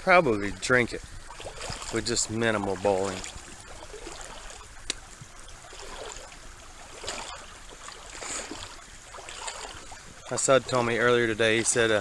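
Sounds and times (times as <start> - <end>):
creek water trickling: 0.0 - 12.0.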